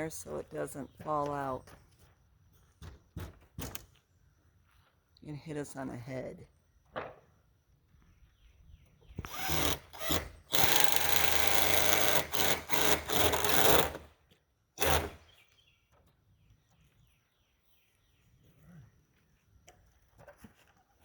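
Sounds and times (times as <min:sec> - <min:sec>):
power drill driving screws into wood: 0:09.2 - 0:14.2, 0:14.8 - 0:15.4.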